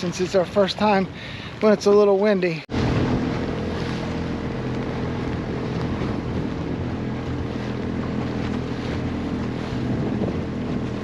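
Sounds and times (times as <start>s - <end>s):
motorboat engine humming: 0.0s - 11.0s
wind on microphone: 0.0s - 11.0s.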